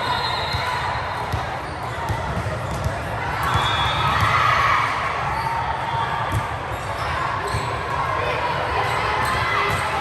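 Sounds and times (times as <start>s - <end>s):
balls thudding on gym floor: 1.3s - 4.4s.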